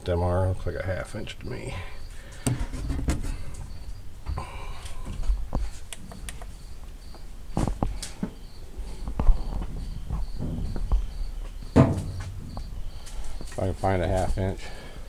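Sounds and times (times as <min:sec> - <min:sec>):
cricket chirping: 0:00.0 - 0:15.0
footsteps: 0:06.8 - 0:15.0.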